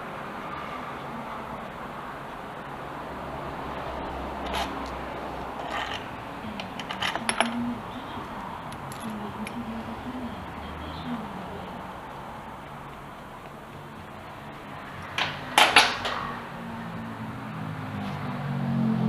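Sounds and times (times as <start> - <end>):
steady background hiss: 0.0 - 19.0
small metal parts clinking: 4.4 - 10.2, 15.0 - 16.4.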